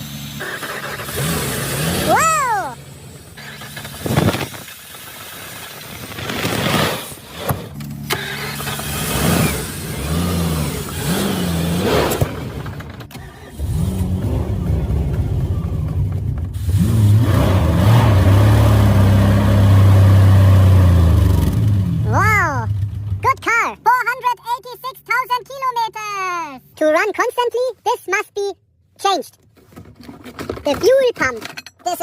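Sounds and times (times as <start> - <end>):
car engine running unevenly: 7.3 - 16.8.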